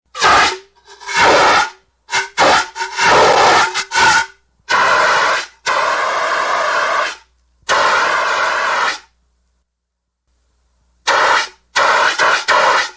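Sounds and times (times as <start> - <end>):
fire extinguisher spraying: 4.7 - 9.1, 11.1 - 12.9.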